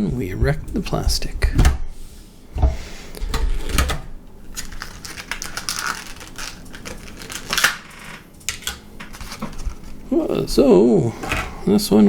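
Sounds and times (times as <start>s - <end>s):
plastic wrap crinkling: 3.1s - 11.7s.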